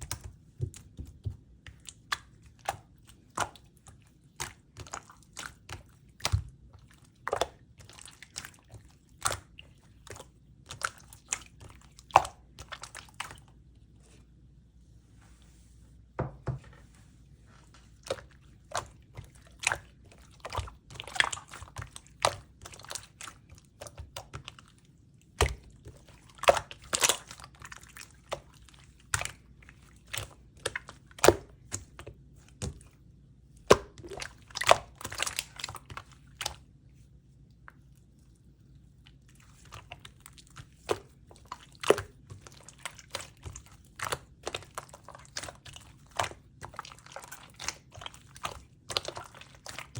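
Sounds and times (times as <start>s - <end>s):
slime clicking and squishing: 0.0s - 13.6s, 17.8s - 38.2s, 38.9s - 49.9s.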